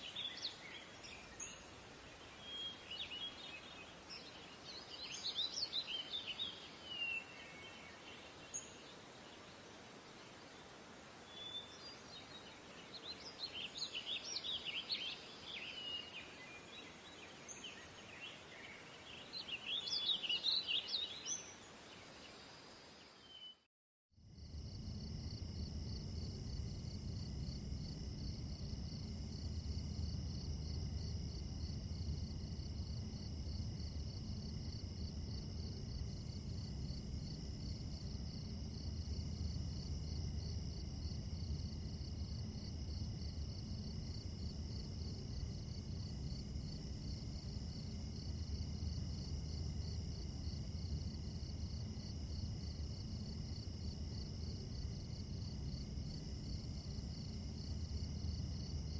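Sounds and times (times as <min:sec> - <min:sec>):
crickets and insects trilling: 0:24.2 - 0:58.9.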